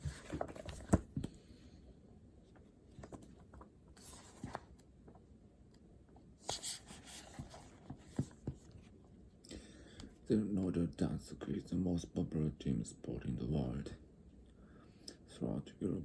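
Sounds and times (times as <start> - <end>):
paper rustling: 0.0 - 1.1, 3.0 - 4.8.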